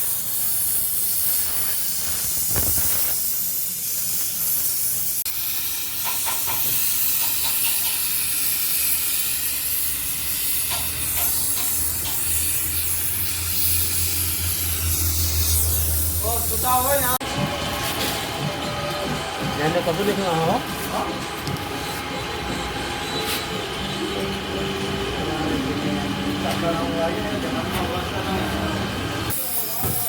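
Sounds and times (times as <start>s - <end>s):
welding arc hissing: 0.0s - 17.2s, 29.3s - 30.0s.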